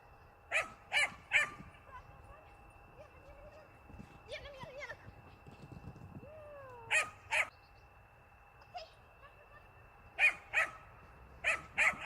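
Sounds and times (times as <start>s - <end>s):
puppy barking: 0.5s - 1.6s, 6.9s - 7.5s, 10.2s - 12.0s.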